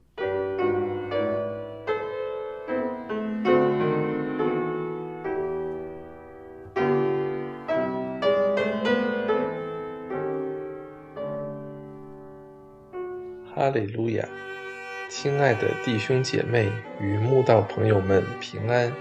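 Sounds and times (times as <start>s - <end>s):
slow solo piano music: 0.0s - 13.6s.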